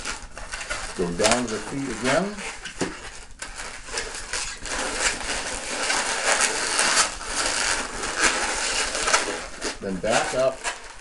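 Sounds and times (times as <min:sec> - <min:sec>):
balloons rubbing and crinkling: 0:00.0 - 0:11.0.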